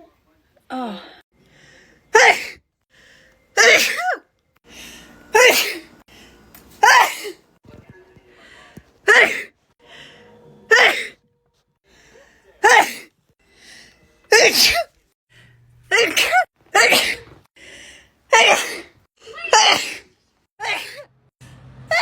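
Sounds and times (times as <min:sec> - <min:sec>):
person sneezing: 0:02.1 - 0:02.6, 0:03.6 - 0:04.2, 0:05.4 - 0:05.9, 0:06.8 - 0:07.4, 0:12.6 - 0:13.1, 0:14.3 - 0:14.9, 0:15.9 - 0:17.4, 0:18.3 - 0:21.1.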